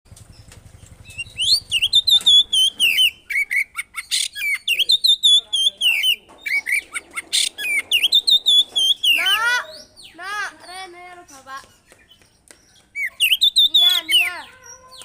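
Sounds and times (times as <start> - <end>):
songbird singing: 0.1 - 15.0.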